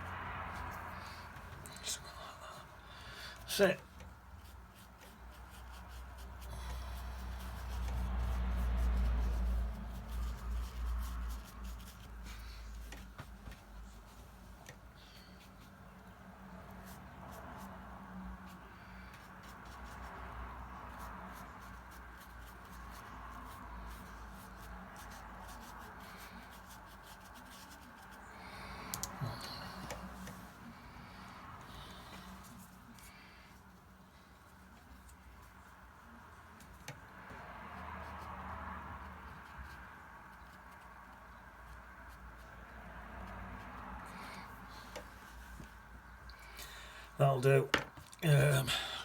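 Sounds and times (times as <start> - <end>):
paintbrush scrubbing on paper: 3.4 - 14.4, 18.5 - 33.6.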